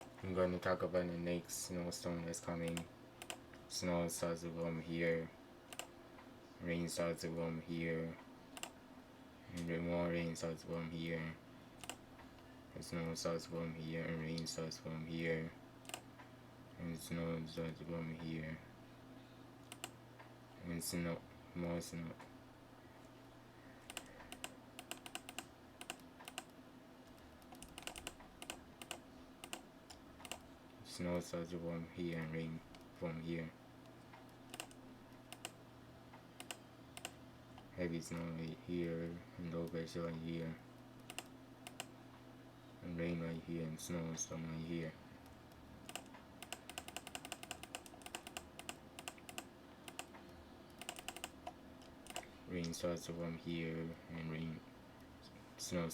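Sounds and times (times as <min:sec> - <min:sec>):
low steady hum: 0:00.0 - 0:55.9
keyboard typing: 0:02.6 - 0:03.4, 0:11.8 - 0:12.0, 0:19.7 - 0:20.0, 0:23.8 - 0:30.5, 0:34.2 - 0:35.6, 0:36.4 - 0:37.2, 0:41.0 - 0:41.9, 0:45.2 - 0:52.3
computer keys clicking: 0:02.6 - 0:03.5, 0:05.7 - 0:05.9, 0:08.6 - 0:08.8, 0:11.8 - 0:12.0, 0:15.8 - 0:16.1, 0:19.7 - 0:20.0, 0:23.8 - 0:30.5, 0:33.9 - 0:35.6, 0:36.4 - 0:38.3, 0:41.0 - 0:41.9, 0:45.2 - 0:52.8.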